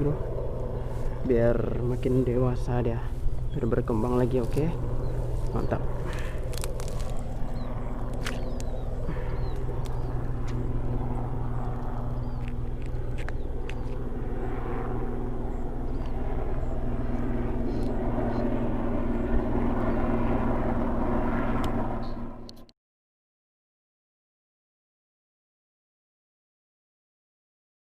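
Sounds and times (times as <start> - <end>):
birds chirping: 0.0 - 20.5
low engine hum: 0.0 - 22.6.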